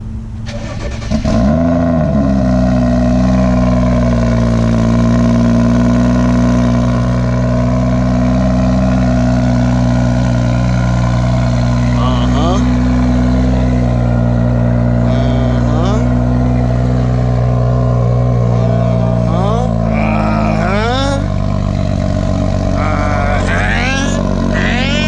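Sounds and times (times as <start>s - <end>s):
car engine starting and idling: 0.0s - 25.0s.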